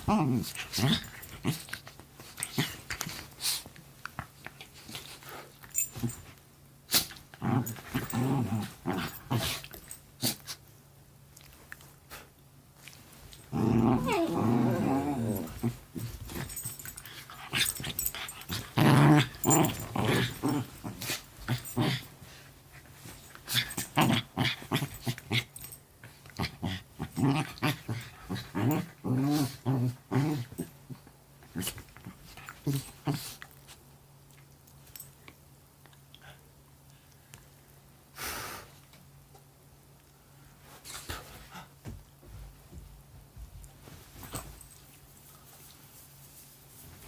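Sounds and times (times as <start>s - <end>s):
dogs play growling: 0.0s - 10.7s, 11.3s - 33.8s
paws rustling on bedding: 40.5s - 47.0s.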